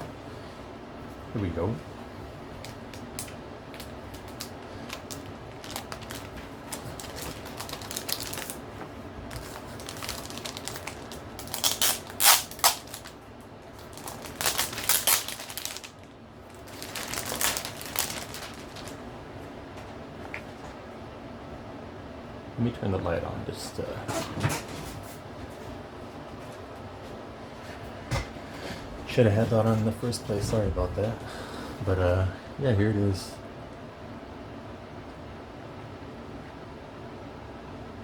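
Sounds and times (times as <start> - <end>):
packaging handling noise: 2.6 - 19.1.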